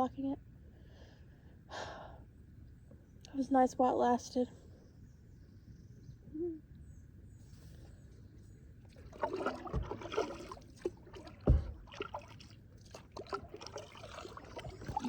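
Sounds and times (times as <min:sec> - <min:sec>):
kayak paddle splashing: 0:08.8 - 0:15.0
water trickling off paddle: 0:08.8 - 0:15.0.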